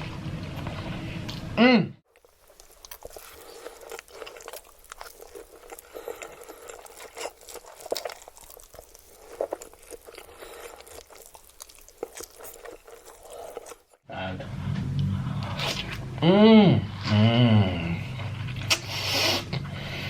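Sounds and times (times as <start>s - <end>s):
chewing noodles: 2.1s - 14.0s.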